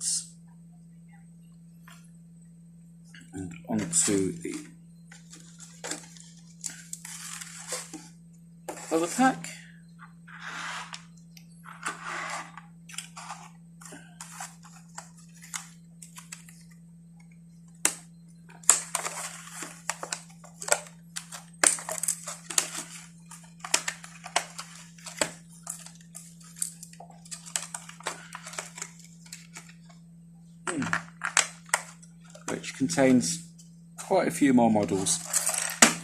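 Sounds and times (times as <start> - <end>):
plastic packaging crinkling: 5.1 - 8.0, 18.5 - 29.9
crackles and taps: 12.8 - 30.0, 30.6 - 32.6.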